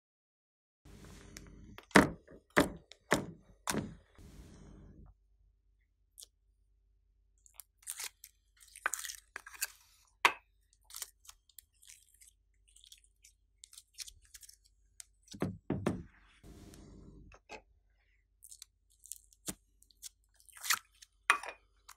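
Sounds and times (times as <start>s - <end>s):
slime squelching and crackling: 10.6s - 15.4s.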